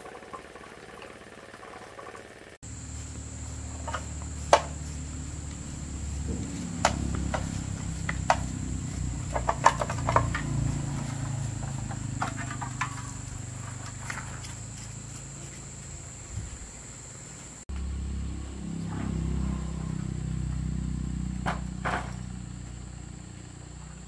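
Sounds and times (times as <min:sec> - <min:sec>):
high-pitched insect drone: 0:00.1 - 0:24.0
low hum: 0:02.6 - 0:17.0, 0:17.7 - 0:24.0
tools knocking and clicking: 0:06.8 - 0:14.6.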